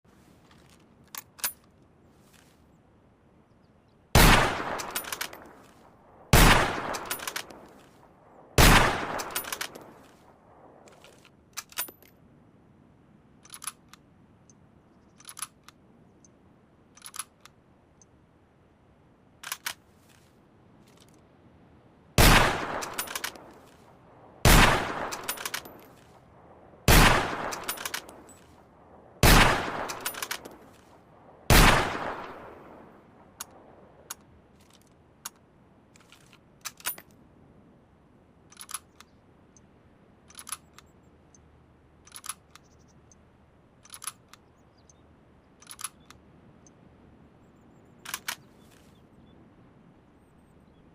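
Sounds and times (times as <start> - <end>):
rifle gunshots echoing: 4.2 - 7.8, 8.6 - 10.7, 22.2 - 23.6, 24.4 - 28.4, 29.0 - 30.7, 31.5 - 32.9.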